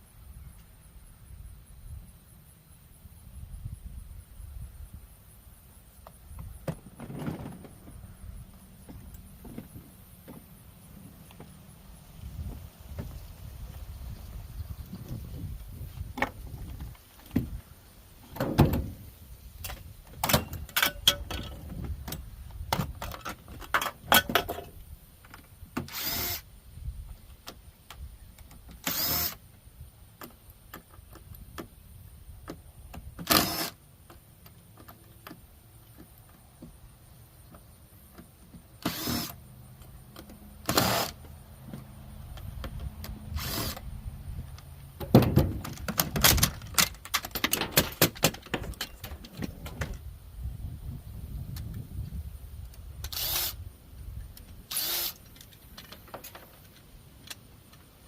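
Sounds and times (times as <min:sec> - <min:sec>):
metal clanks and rattles: 0:19.7 - 0:24.8, 0:45.0 - 0:50.0.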